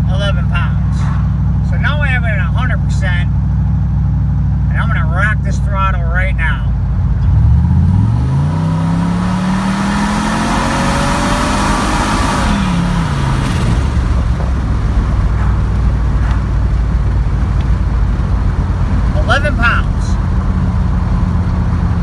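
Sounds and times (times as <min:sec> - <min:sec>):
engine revving at full throttle: 0:06.8 - 0:22.0.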